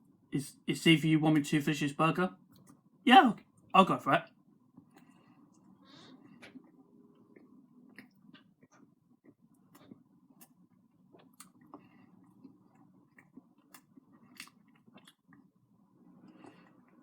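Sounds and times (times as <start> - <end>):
person chewing: 4.8 - 17.0.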